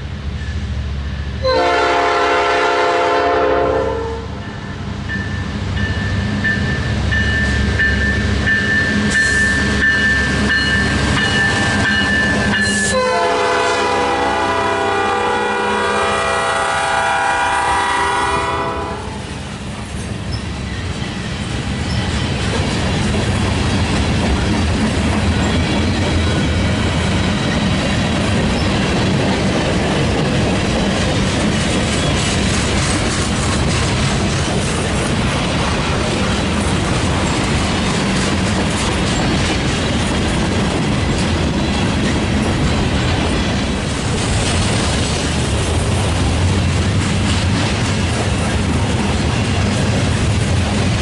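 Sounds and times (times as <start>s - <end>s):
freight train rumbling: 0.0s - 51.0s
locomotive air horn blast: 1.4s - 4.3s, 12.9s - 19.3s
wheels clattering over rails: 21.7s - 51.0s.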